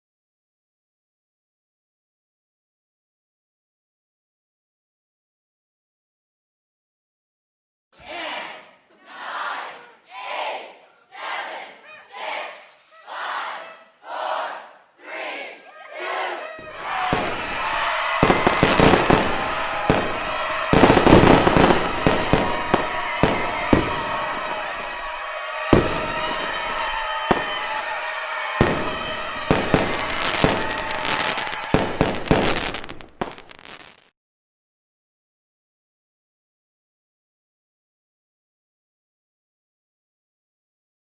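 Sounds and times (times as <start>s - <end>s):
fireworks bangs and crackles: 16.6s - 34.1s.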